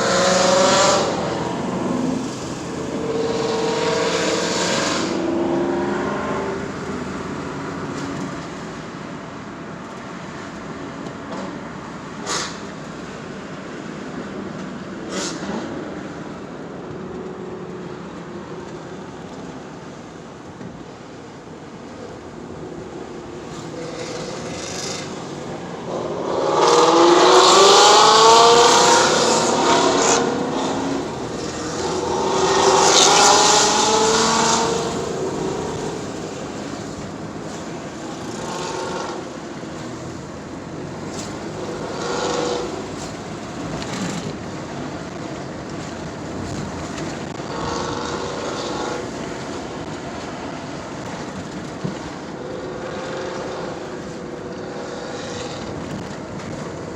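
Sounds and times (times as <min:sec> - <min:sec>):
race cars passing at speed: 0:00.0 - 0:56.9.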